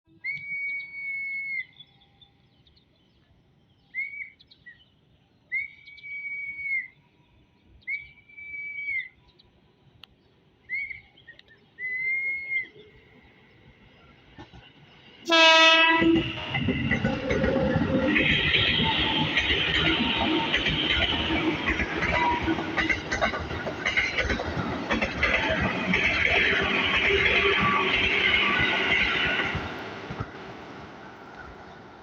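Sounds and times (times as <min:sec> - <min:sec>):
train horn blast: 0:15.3 - 0:16.7.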